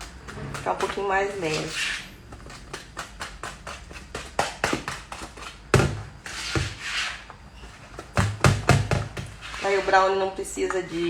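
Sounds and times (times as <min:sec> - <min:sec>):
utensil scraping a bowl: 0:00.0 - 0:02.2, 0:09.4 - 0:11.0.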